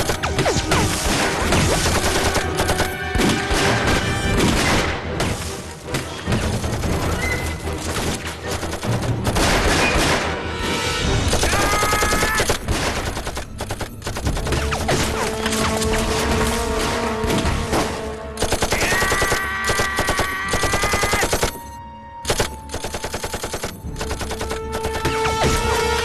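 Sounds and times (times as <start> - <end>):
film score music: 0.0 - 26.0
machine-gun bursts: 11.3 - 14.5, 18.4 - 21.6, 22.3 - 25.0.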